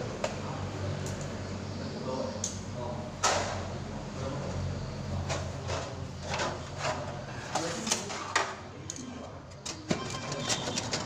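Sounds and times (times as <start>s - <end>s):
panel clicks and scrapes: 9.5s - 11.0s.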